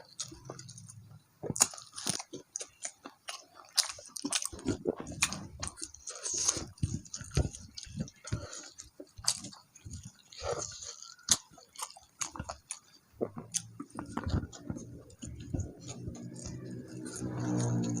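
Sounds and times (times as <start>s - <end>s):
crisp crunching of food: 0.0s - 18.0s
wet mouth sounds: 3.7s - 18.0s.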